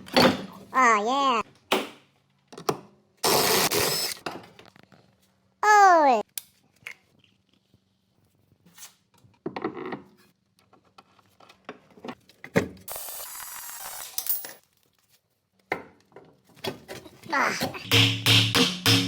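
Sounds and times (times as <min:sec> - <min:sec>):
power tool hissing: 0:03.2 - 0:04.2.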